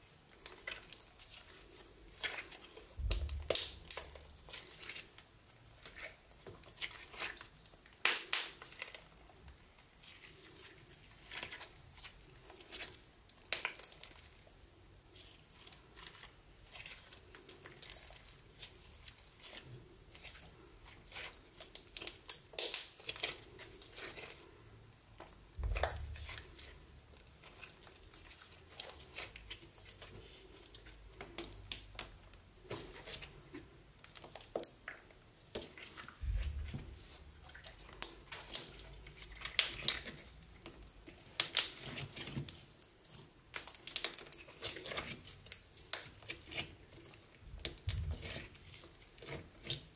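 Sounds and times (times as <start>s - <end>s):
slime crackling and popping: 0.3s - 9.2s, 11.0s - 14.5s, 15.2s - 24.4s, 25.2s - 33.3s, 33.9s - 49.9s
dull low thumps: 3.0s - 3.6s, 25.6s - 26.5s, 36.2s - 37.3s.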